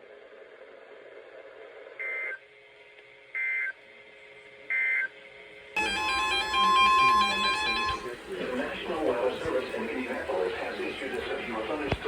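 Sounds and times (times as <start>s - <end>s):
loud steady alert tone: 5.8s - 8.1s.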